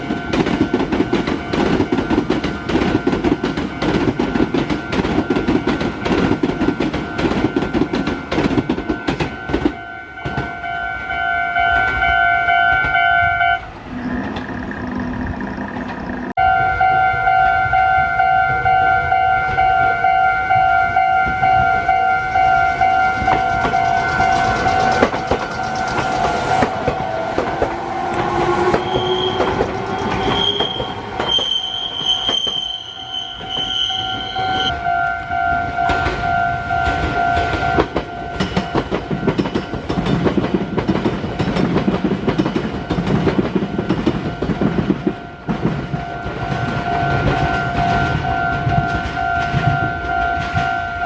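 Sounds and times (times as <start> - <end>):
train wheels clattering: 0.0 - 13.0, 20.9 - 34.7, 35.8 - 51.0
rising train whine: 0.0 - 51.0
shrill high tone: 25.6 - 35.4.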